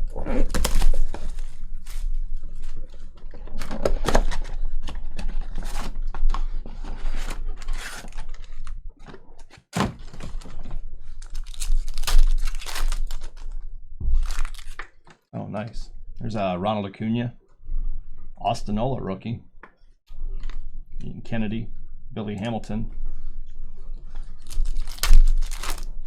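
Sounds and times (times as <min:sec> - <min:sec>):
wrappers tearing and crinkling: 0:00.4 - 0:01.6, 0:09.8 - 0:10.4, 0:11.2 - 0:14.8, 0:24.3 - 0:26.0.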